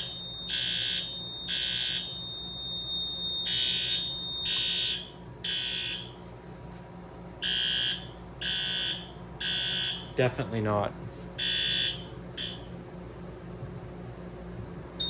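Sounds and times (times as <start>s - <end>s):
steady high-pitched tone: 0.0s - 5.2s
fire alarm horn blasts: 0.0s - 6.3s, 7.4s - 10.2s, 11.4s - 12.8s.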